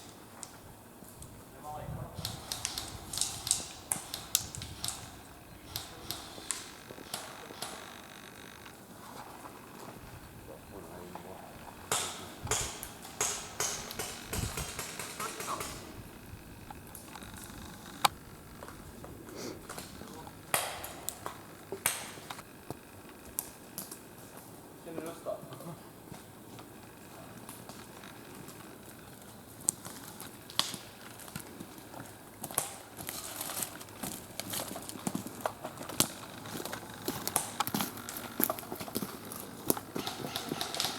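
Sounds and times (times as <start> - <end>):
sharp clicks and snaps: 2.2 - 8.7.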